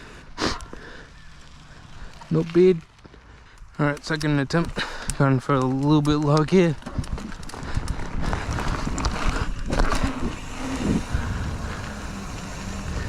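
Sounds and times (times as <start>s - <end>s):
tyres rumbling: 0.0s - 13.0s
bike knocks and rattles: 3.9s - 13.0s
wind rushing over microphone: 7.0s - 13.0s.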